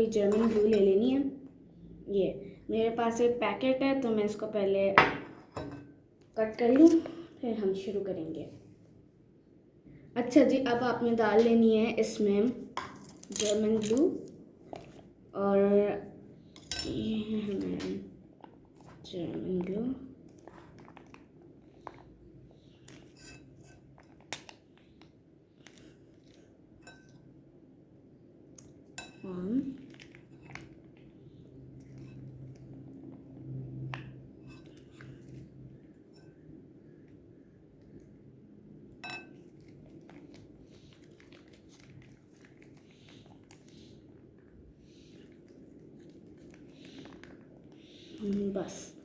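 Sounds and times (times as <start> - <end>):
spoon clinking against a bowl: 29.0 - 29.3, 39.0 - 39.4.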